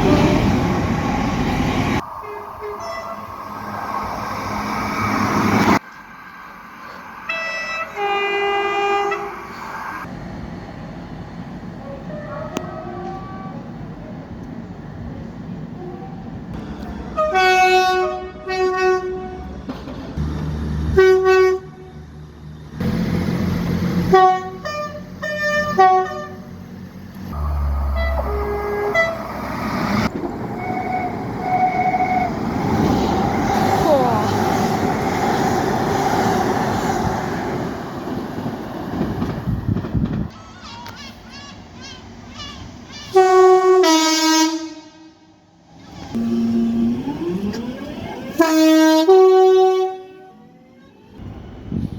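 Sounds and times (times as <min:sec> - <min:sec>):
train rumbling past: 0:00.0 - 0:51.9
train horn blasts: 0:02.2 - 0:03.5, 0:07.3 - 0:09.4, 0:11.8 - 0:13.7, 0:17.1 - 0:19.6, 0:20.9 - 0:22.0, 0:24.0 - 0:26.5, 0:27.3 - 0:29.5, 0:43.2 - 0:45.4, 0:48.4 - 0:50.4.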